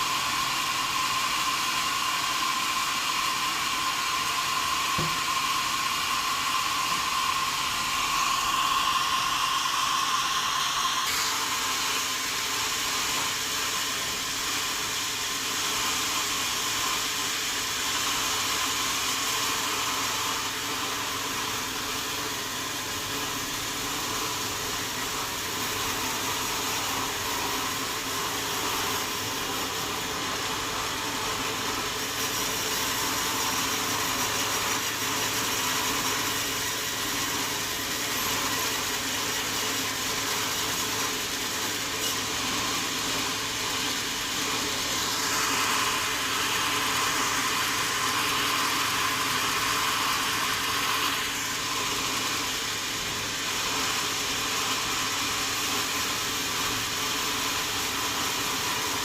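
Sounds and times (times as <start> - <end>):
high whine: 0.0 - 18.1
sawmill saw running: 0.0 - 59.0.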